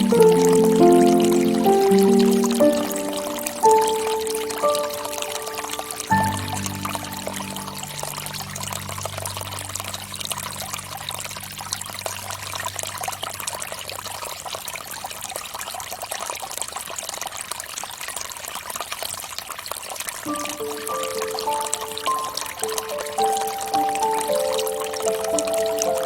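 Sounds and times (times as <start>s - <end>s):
low held chord music: 0.0s - 13.6s, 20.3s - 26.0s
fountain water trickling: 0.0s - 26.0s.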